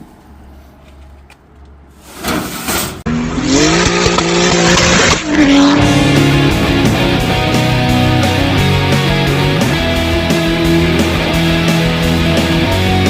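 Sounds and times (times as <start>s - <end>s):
car engine revving: 3.1s - 13.0s
rush of noise: 3.9s - 13.0s
low hum: 5.2s - 12.8s.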